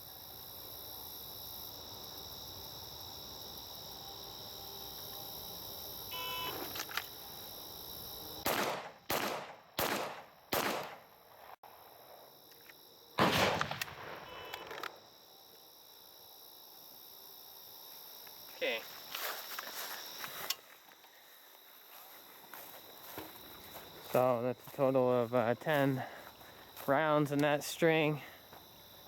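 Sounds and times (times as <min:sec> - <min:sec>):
insects chirping: 0:00.0 - 0:29.0
handgun shots: 0:08.4 - 0:11.0, 0:13.2 - 0:14.3.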